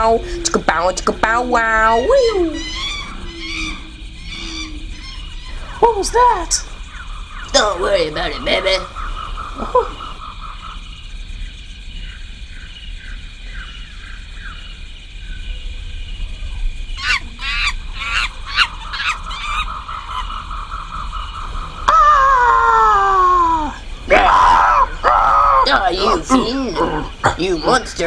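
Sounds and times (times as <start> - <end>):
high insect-like drone: 0.0 - 28.0
squawking honking animal calls: 1.8 - 6.6, 17.0 - 20.5
falling animal screech: 1.9 - 5.8, 17.0 - 20.4, 21.6 - 26.3.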